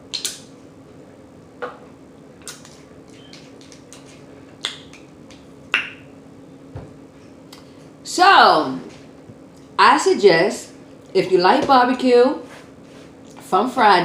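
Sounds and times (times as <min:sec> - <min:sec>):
wet lip smacks while eating: 0:00.1 - 0:00.5, 0:02.4 - 0:05.4.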